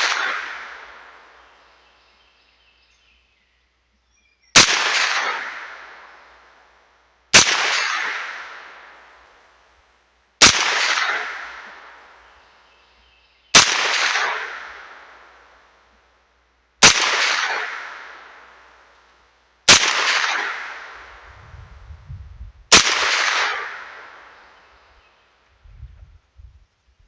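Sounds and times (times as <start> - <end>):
gunshots with echo: 0.0 - 1.7, 4.6 - 6.6, 7.4 - 9.4, 10.4 - 12.4, 13.6 - 15.6, 16.8 - 18.9, 19.7 - 21.5, 22.7 - 24.8.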